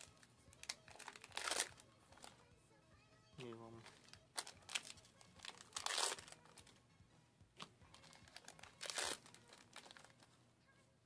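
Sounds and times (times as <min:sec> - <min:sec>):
foil wrappers crinkling and tearing: 0:00.0 - 0:02.3, 0:03.8 - 0:06.7, 0:07.9 - 0:10.3.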